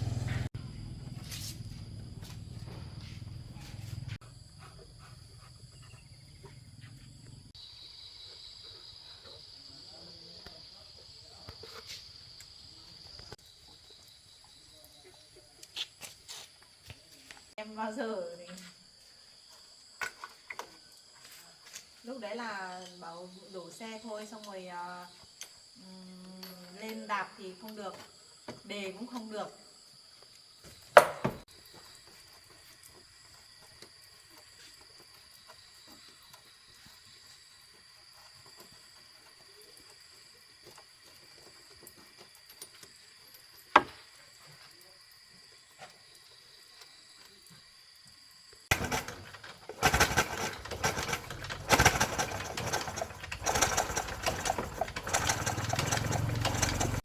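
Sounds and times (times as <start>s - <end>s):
small engine running uneven: 0.0s - 4.2s, 48.7s - 57.0s.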